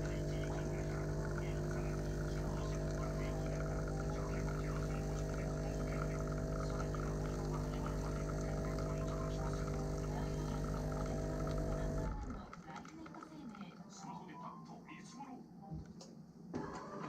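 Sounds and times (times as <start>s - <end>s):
machine humming: 0.0s - 12.6s.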